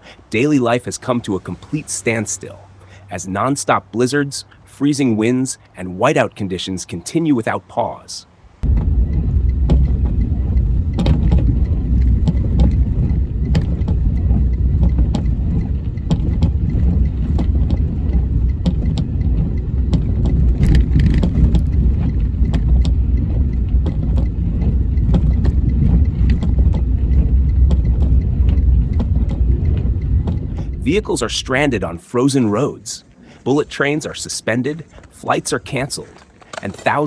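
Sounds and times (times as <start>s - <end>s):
vehicle engine rumble: 0.0s - 4.8s, 8.2s - 37.0s
clicks and knocks: 8.6s - 31.0s.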